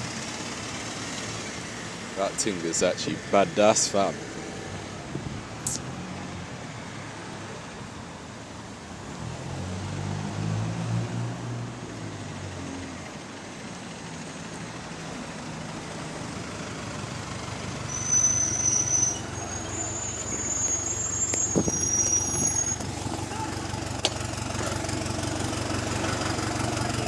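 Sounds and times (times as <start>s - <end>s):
bus engine running: 0.0s - 9.7s, 10.3s - 27.0s
road noise: 0.0s - 27.0s
exhaust leak blowing: 14.7s - 27.0s
high thin squeal: 17.8s - 23.5s.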